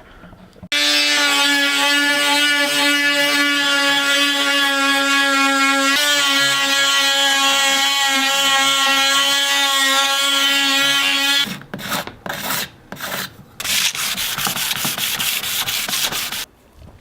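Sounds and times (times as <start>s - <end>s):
hand sanding wood: 0.8s - 16.5s.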